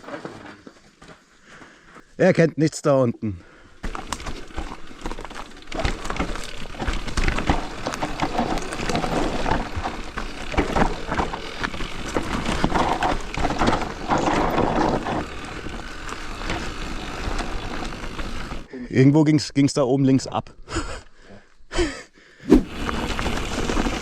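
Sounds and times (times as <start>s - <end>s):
tyre and trail noise: 0.0s - 18.8s, 22.4s - 24.0s
bike knocking and clattering: 3.8s - 18.7s.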